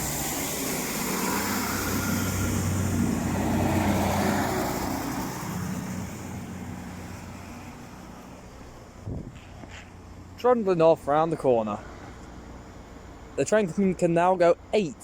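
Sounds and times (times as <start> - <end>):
diesel train pulling away: 0.0 - 9.0.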